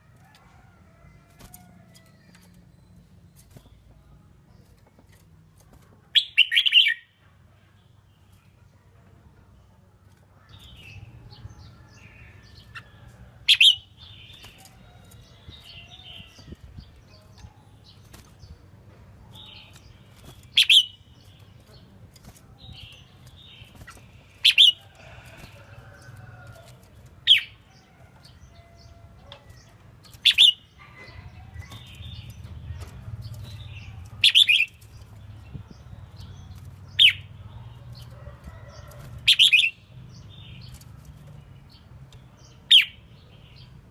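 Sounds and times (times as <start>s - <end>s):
bird singing warbled phrases: 6.1s - 7.2s, 19.3s - 24.8s, 29.5s - 37.7s.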